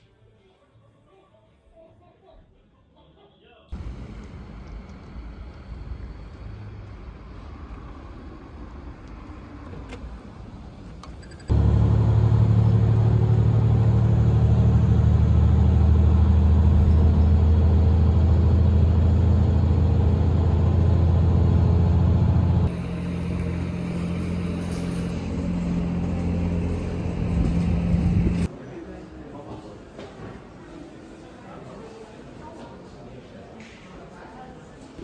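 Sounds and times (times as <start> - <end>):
car engine and road rumble: 3.8 - 28.5.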